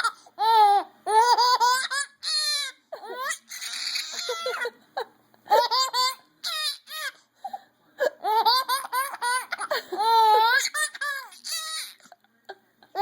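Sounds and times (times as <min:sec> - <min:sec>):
baby laughing and squealing: 0:00.0 - 0:04.8, 0:08.2 - 0:12.1.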